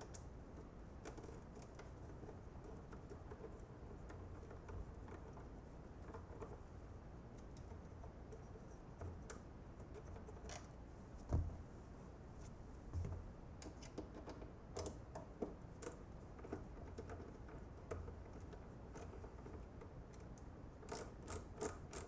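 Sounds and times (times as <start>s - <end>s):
small clicks of screws: 17.9s - 22.0s.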